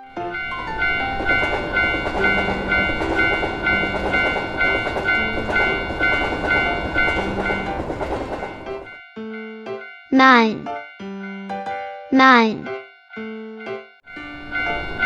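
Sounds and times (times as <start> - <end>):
train rushing past: 0.0 - 9.0, 14.1 - 15.0
railroad crossing alarm dinging: 0.0 - 12.1, 12.7 - 15.0.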